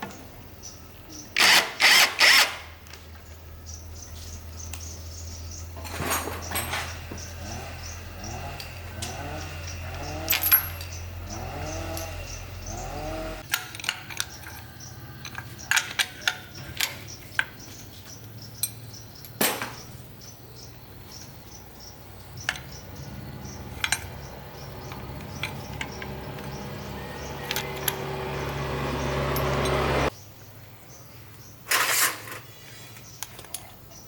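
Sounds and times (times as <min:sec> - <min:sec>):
metal tools clinking: 0:09.8 - 0:12.8, 0:13.4 - 0:20.2, 0:22.2 - 0:30.1, 0:31.7 - 0:32.5.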